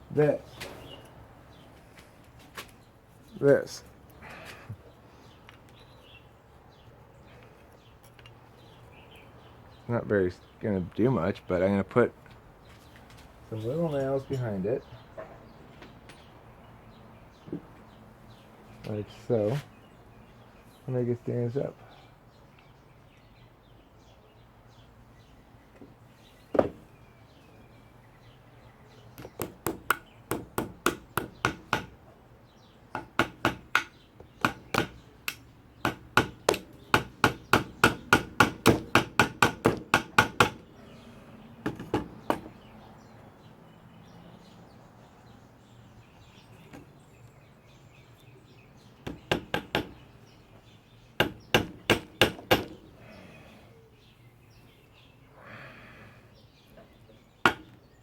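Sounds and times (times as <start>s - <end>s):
hammer driving nails into wood: 29.2s - 32.0s, 33.0s - 40.6s, 51.2s - 52.8s.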